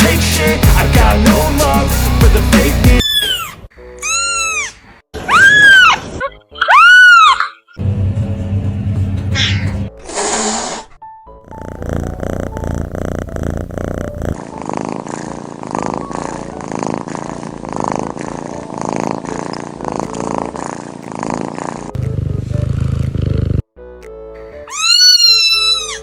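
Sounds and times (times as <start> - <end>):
cat purring: 11.4 - 23.6.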